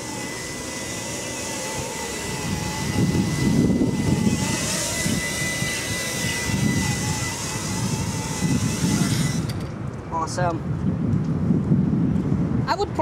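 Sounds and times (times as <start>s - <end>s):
drone propellers whining: 0.0s - 10.4s
wind buffeting microphone: 0.0s - 13.0s.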